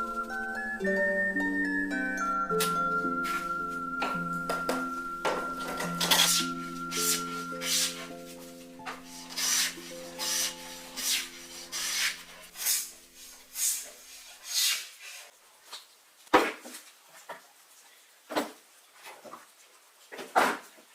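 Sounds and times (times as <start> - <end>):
hand tool scraping wood: 6.0 - 15.3.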